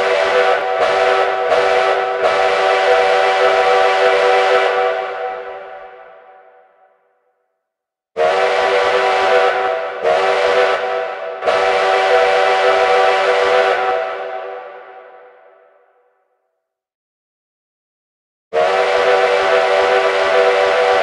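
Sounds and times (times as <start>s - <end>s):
steam train whistle blasts: 0.0s - 6.3s, 8.2s - 15.3s, 18.6s - 21.0s.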